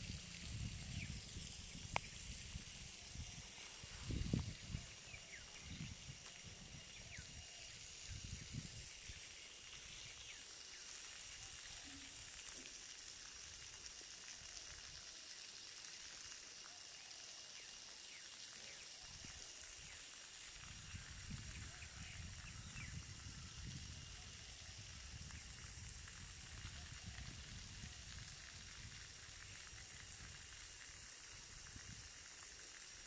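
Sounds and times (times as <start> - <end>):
wind rumbling on microphone: 0.0 - 9.2, 20.6 - 30.6
high-pitched outdoor hiss: 0.0 - 33.0.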